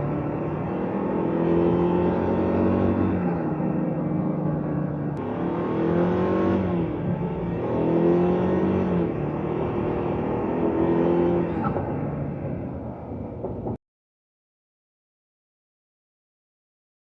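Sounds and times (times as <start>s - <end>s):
car engine revving: 0.0s - 12.6s.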